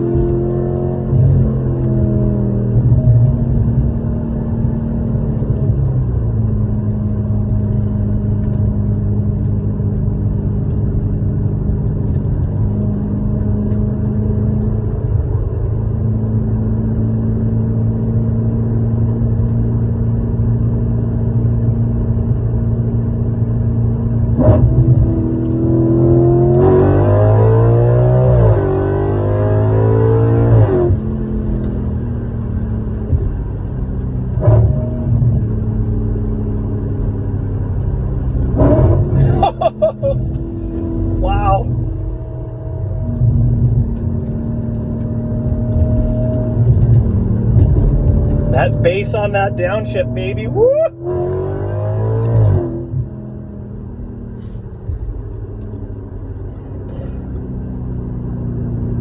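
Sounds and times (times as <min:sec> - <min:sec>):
car engine revving: 0:00.0 - 0:08.6, 0:24.2 - 0:58.1.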